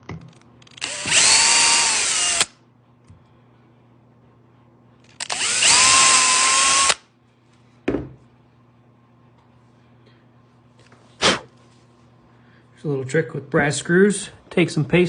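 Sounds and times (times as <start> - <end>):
power drill whining: 0.7 - 2.5, 5.2 - 7.0.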